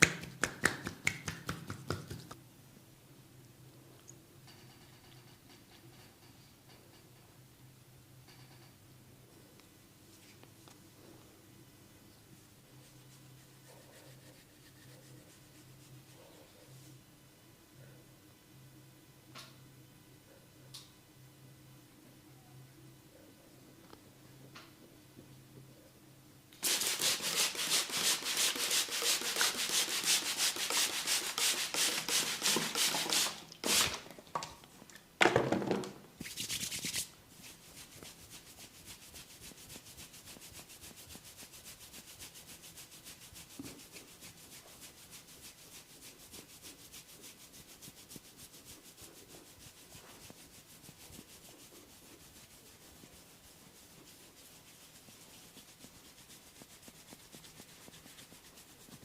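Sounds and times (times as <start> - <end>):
scratching and rubbing of hair: 12.7 - 17.0, 26.6 - 34.0, 36.2 - 59.0.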